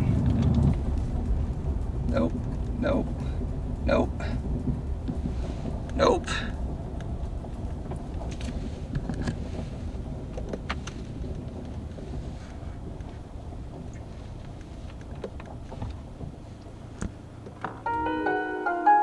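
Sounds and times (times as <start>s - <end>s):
low rumble of tyres on road: 0.0s - 18.9s.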